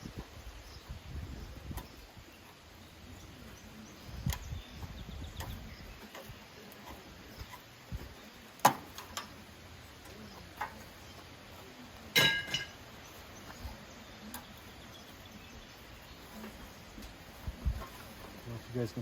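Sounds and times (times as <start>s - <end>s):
metal tools knocking and clinking: 12.1s - 12.8s.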